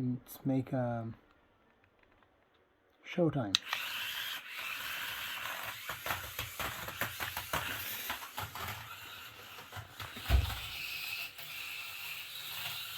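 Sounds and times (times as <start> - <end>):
toy car motor whine: 3.6 - 12.9.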